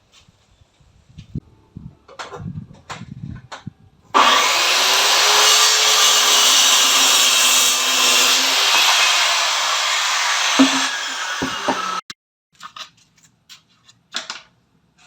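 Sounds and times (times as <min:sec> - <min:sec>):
electric power tool running: 0:04.2 - 0:12.0.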